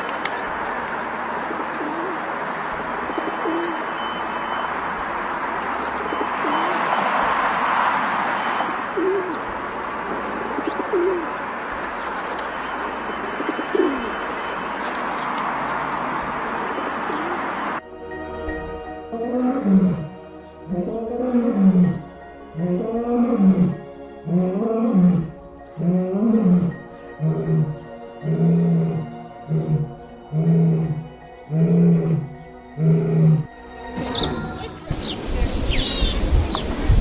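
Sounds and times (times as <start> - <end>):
soft background music: 0.0 - 37.0
big cat calling: 20.7 - 22.0, 22.6 - 33.5.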